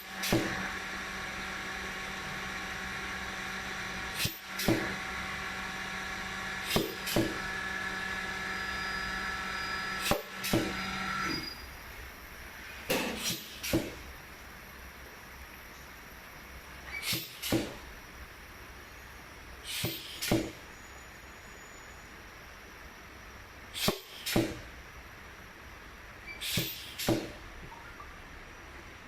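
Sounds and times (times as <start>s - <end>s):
sharp welding strikes: 0.1s - 0.6s, 4.2s - 5.0s, 6.6s - 7.4s, 10.0s - 11.4s, 12.9s - 14.0s, 17.0s - 17.9s.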